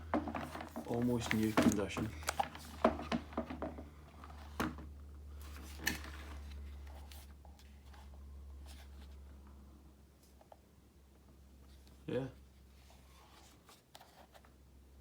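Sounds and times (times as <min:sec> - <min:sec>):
light handling clicks and knocks: 0:00.0 - 0:04.9
low steady hum: 0:00.0 - 0:15.0.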